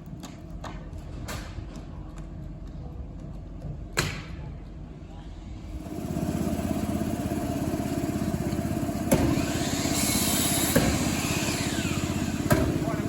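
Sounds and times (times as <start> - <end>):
engine starting and running: 5.7 - 13.0
sharp knocks: 9.1 - 11.7, 12.3 - 13.0.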